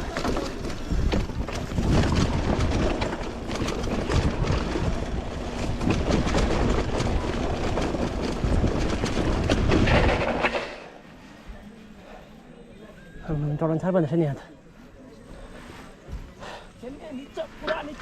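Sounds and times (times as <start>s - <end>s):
wind buffeting microphone: 0.0s - 10.4s
bike clattering over bumps: 0.0s - 11.0s.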